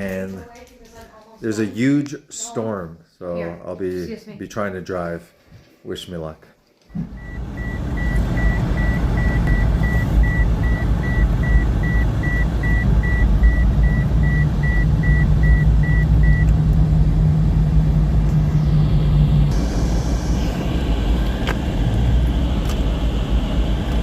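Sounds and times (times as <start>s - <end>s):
dashboard warning chime beeping: 7.0s - 16.5s
car engine low rumble: 7.0s - 24.0s.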